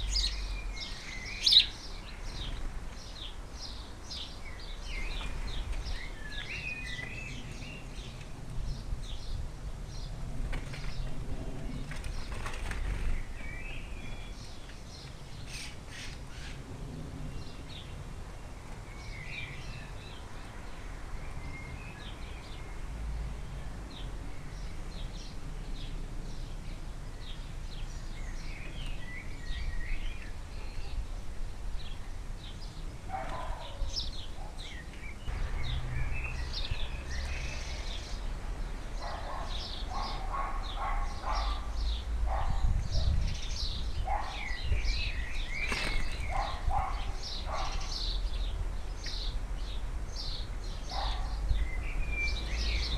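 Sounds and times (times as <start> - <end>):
small birds chirping: 0.0 - 52.9
wings fluttering: 11.8 - 13.2, 45.6 - 46.3.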